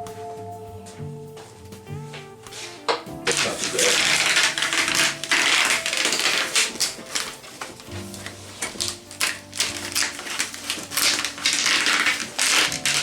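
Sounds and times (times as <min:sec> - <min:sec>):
plastic sheets clicking and crackling: 0:02.9 - 0:13.0.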